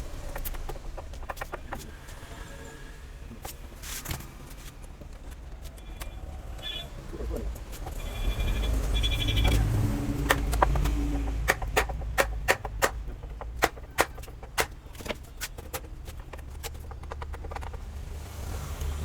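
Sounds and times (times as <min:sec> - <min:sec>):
hammering knocks: 0:07.7 - 0:18.0.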